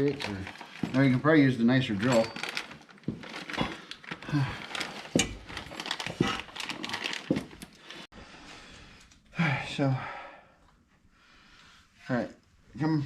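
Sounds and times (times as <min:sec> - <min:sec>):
rummaging through parts: 0:00.0 - 0:08.0.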